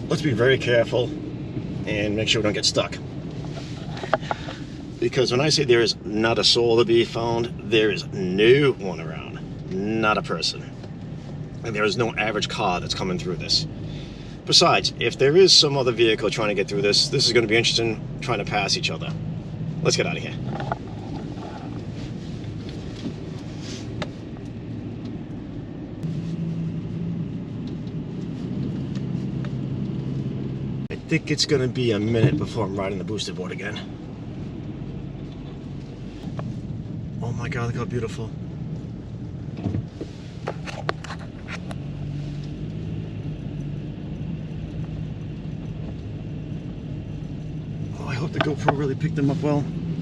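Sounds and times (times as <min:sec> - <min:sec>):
car engine hum: 0:00.0 - 0:50.0
road rumble: 0:00.0 - 0:50.0.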